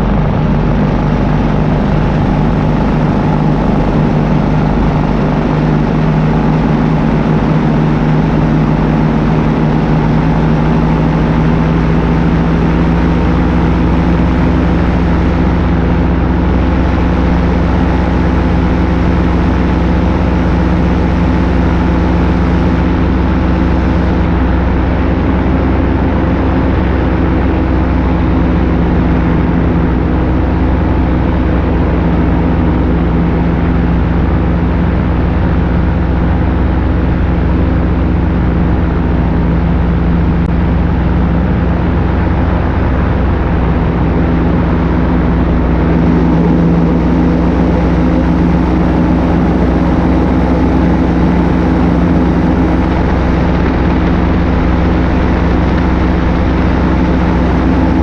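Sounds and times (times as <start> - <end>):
paramotor engine droning: 0.0 - 58.0.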